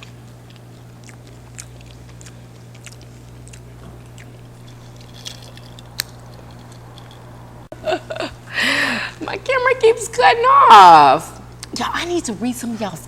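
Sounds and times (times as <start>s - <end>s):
chewing and biting food: 0.0s - 7.4s
food crunches: 0.0s - 7.4s
steady low hum: 0.0s - 13.0s.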